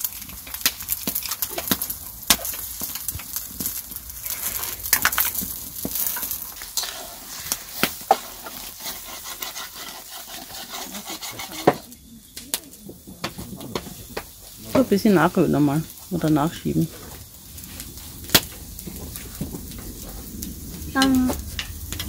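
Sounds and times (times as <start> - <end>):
egg sizzling in a pan: 0.0 - 22.0
utensil scraping a pan: 4.2 - 12.0.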